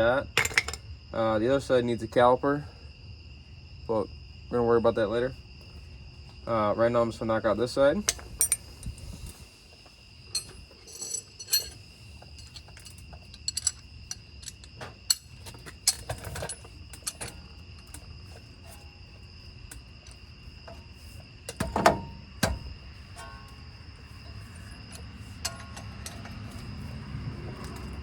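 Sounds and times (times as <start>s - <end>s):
hand tools tapping on metal: 10.3s - 18.1s, 19.7s - 26.8s.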